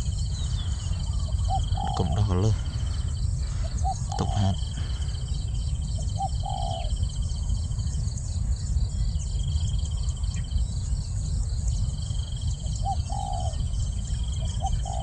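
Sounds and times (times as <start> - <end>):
dove cooing: 0.0 - 5.3, 5.9 - 7.0, 12.6 - 15.0
constant low rumble: 0.0 - 15.0
pulsing insect trill: 0.0 - 15.0.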